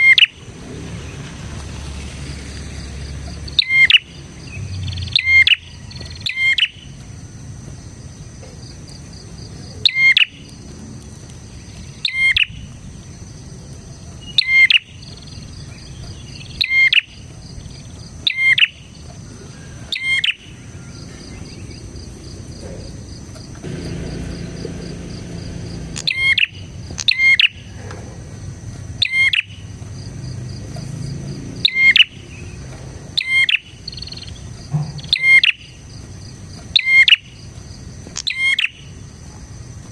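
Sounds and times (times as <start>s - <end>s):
high insect drone: 0.0s - 39.9s
bird sharp chirps: 3.3s - 7.0s, 23.8s - 27.7s, 29.0s - 29.6s, 31.6s - 32.6s, 33.2s - 35.8s, 36.7s - 37.5s, 38.2s - 38.9s.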